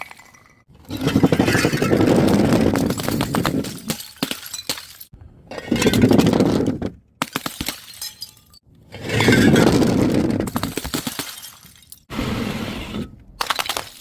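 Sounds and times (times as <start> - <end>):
glass bottles shattering: 2.8 - 6.3, 7.2 - 8.6, 9.2 - 12.1.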